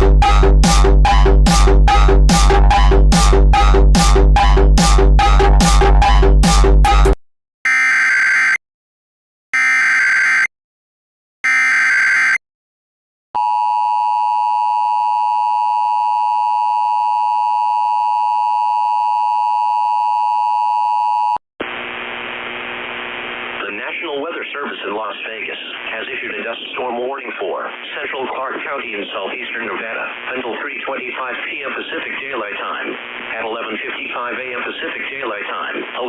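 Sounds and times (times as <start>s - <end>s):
electronic music: 0.0s - 7.2s
person speaking over radio: 23.6s - 36.0s.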